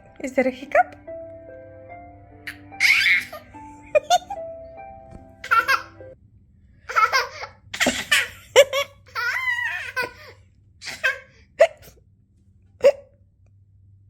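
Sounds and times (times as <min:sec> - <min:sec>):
toddler laughing: 0:02.5 - 0:04.4, 0:05.4 - 0:06.0, 0:06.9 - 0:11.8.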